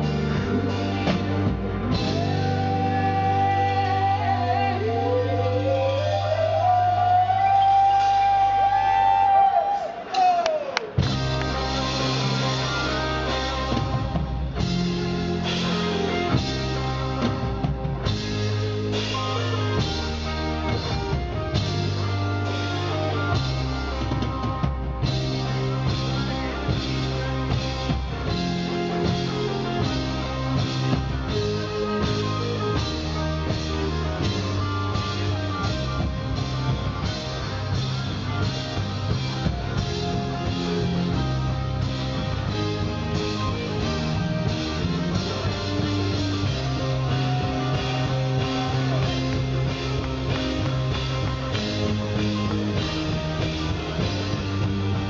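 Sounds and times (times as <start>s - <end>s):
rock band playing live: 0.0s - 55.0s.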